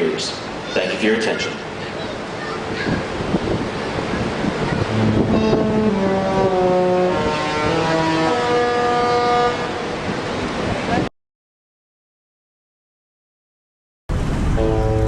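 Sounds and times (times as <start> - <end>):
wind and sea noise: 0.0 - 11.1, 14.1 - 15.0
ship horn playing a tune: 4.8 - 11.0, 14.5 - 15.0.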